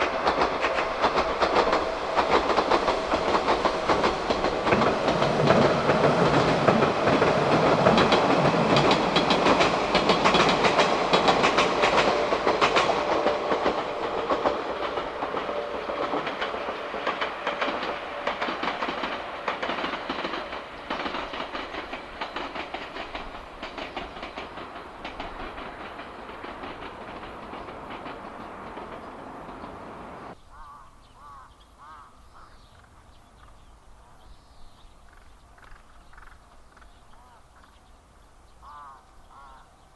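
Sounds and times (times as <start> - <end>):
train wheels clacking over rail joints: 0.0 - 30.4.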